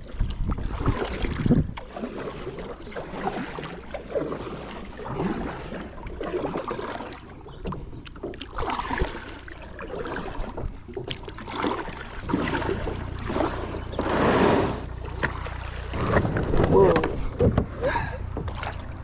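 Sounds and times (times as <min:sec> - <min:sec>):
water splashing against kayak: 0:00.0 - 0:19.0
kayak bumps and knocks: 0:10.0 - 0:19.0.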